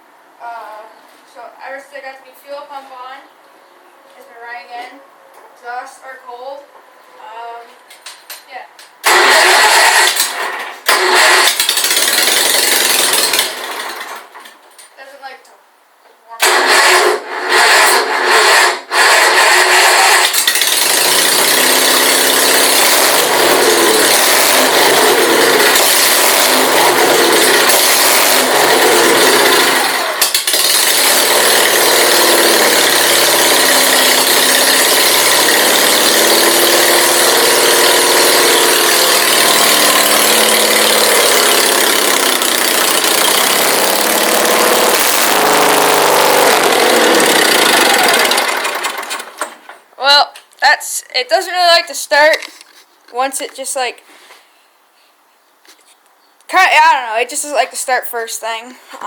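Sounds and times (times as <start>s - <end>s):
garden tractor engine running loud: 9.0s - 14.4s, 16.4s - 49.7s.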